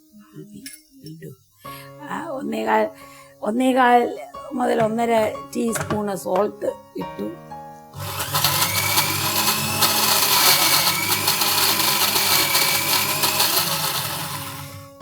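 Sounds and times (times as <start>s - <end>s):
mixer grinder motor whine: 8.0s - 15.0s.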